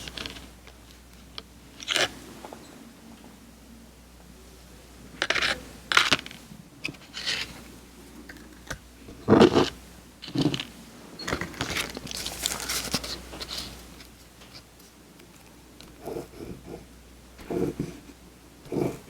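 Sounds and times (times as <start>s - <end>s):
candy paper crinkling: 11.3s - 16.6s.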